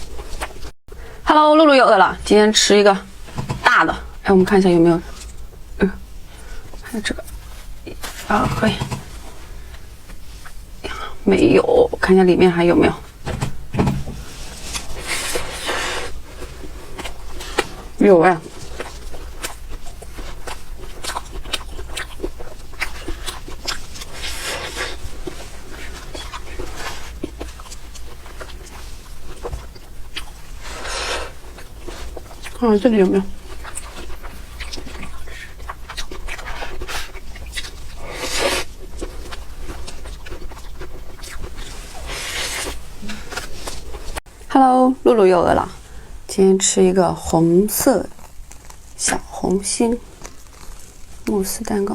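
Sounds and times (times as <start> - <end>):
chewing mouth clicks and smacks: 18.5 - 30.6, 31.4 - 44.2.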